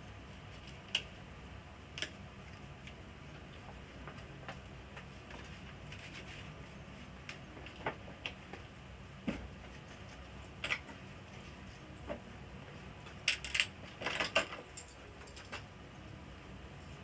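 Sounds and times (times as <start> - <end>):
low steady hum: 0.0 - 17.0
small parts and tools clicking: 13.0 - 15.7.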